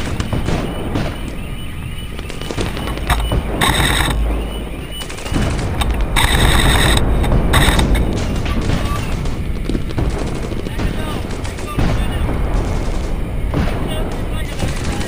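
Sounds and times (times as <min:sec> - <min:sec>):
low wind rumble: 0:00.0 - 0:15.0
airsoft gun full-auto fire: 0:02.4 - 0:04.4, 0:05.0 - 0:15.0.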